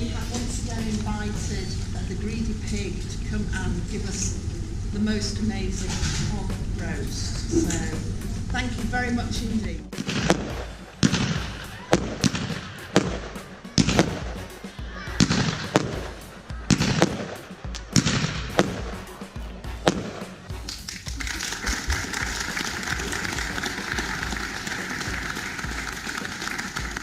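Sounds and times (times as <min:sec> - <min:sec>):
background music: 0:00.0 - 0:27.0
fireworks bangs and crackling: 0:09.9 - 0:27.0.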